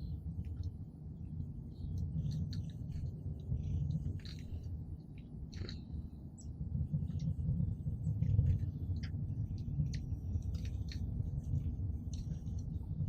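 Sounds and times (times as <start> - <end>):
steady low rumble: 0.0 - 13.0
small birds chirping: 1.3 - 7.3.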